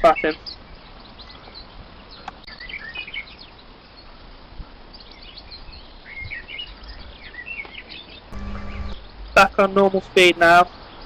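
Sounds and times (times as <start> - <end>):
small birds chirping: 0.0 - 4.1.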